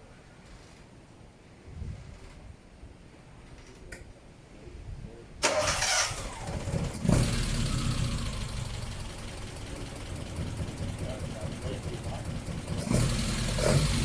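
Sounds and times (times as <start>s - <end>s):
starter motor cranking: 5.4s - 10.0s
car engine running: 6.6s - 14.0s.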